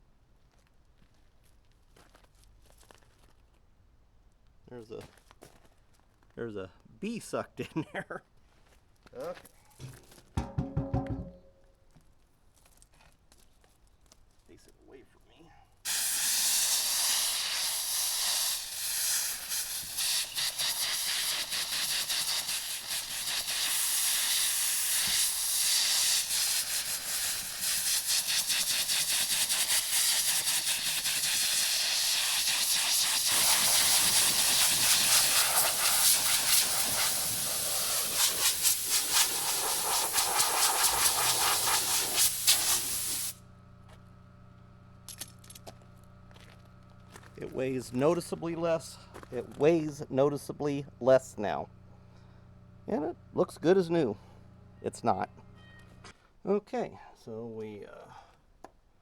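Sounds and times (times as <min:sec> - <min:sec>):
compressed air blowgun hissing: 0:15.9 - 0:43.4.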